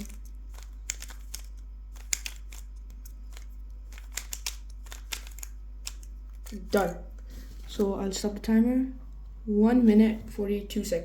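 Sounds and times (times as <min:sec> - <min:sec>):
puzzle cube clicking as turned: 0:00.0 - 0:07.0.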